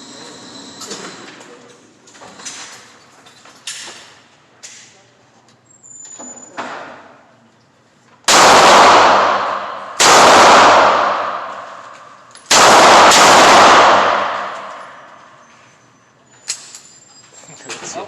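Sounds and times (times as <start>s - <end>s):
loud gunshots with echo: 8.3s - 15.4s.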